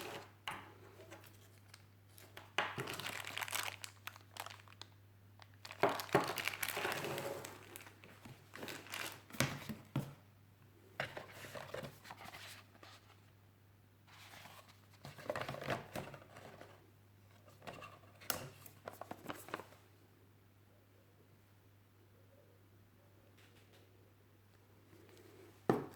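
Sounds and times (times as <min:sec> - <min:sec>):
packaging crinkling: 0:01.2 - 0:09.8.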